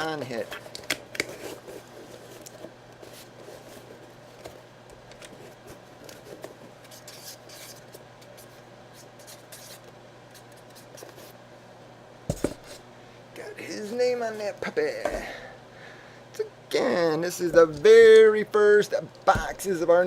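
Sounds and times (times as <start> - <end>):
steady low hum: 0.0 - 20.0
rustling of packaging being handled: 0.2 - 8.4.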